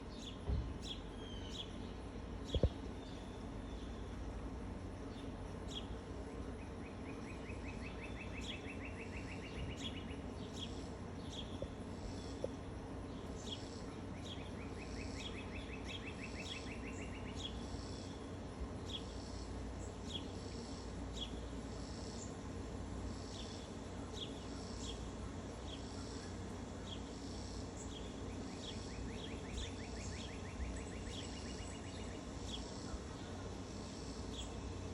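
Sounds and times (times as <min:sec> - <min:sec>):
birds chirping: 0:00.0 - 0:34.9.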